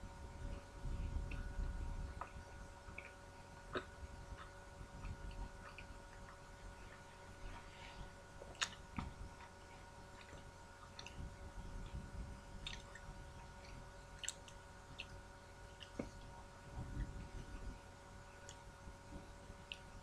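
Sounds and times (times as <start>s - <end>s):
steady faint hum: 0.0s - 20.0s
person chewing food: 1.2s - 17.7s
wet mouth clicks: 2.2s - 6.4s, 12.6s - 13.1s, 13.7s - 15.2s.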